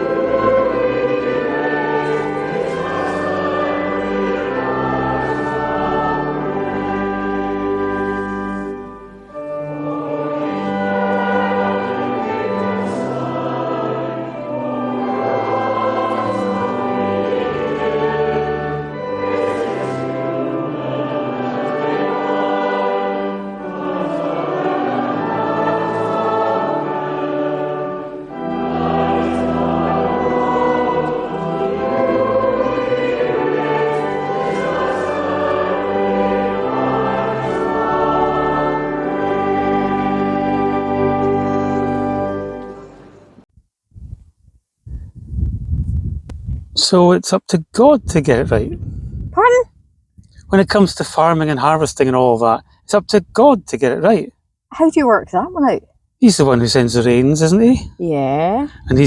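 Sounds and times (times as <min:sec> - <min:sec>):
choir singing a hymn: 0:00.0 - 0:43.4.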